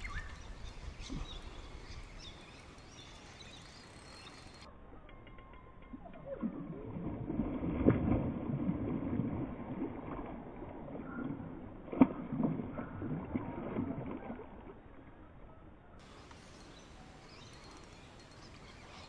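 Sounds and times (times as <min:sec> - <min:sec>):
water splashing around a canoe: 0:06.0 - 0:16.2.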